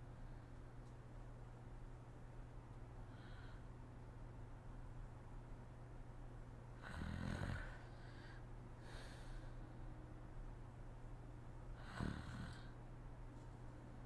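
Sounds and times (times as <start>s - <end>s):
soft breath: 3.0s - 3.7s, 7.6s - 9.9s
woman snoring: 11.8s - 12.7s.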